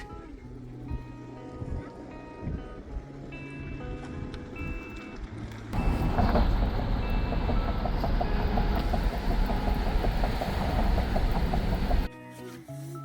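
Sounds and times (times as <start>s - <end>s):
faint steady tones: 0.0s - 12.1s
road and wind noise: 0.0s - 12.1s
vehicle engine rumble: 2.6s - 12.1s
light rapid ticking: 5.8s - 12.1s.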